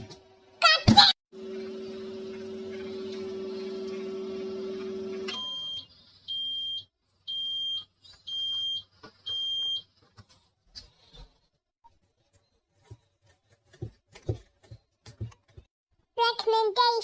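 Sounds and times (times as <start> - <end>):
microwave oven humming: 1.4 - 6.7.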